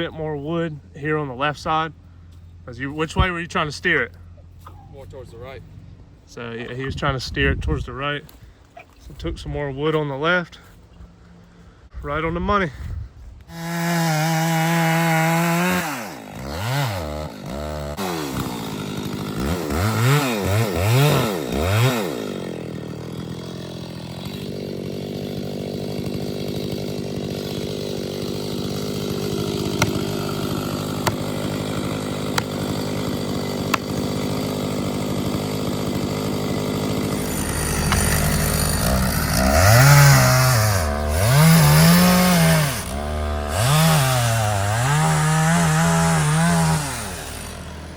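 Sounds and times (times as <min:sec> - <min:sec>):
chainsaw engine revving: 0:13.5 - 0:47.9.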